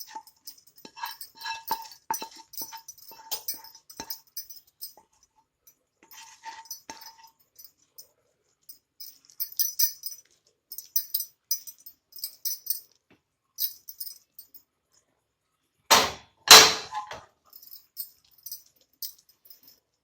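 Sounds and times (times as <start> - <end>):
metal spoon scraping a pan: 0.0 - 4.1, 6.0 - 7.3.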